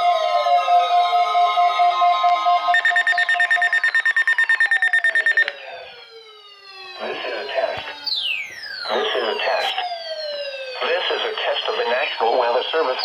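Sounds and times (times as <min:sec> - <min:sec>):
electronic alert tones: 0:02.7 - 0:05.6
rapid pulsed beeping: 0:02.8 - 0:05.6.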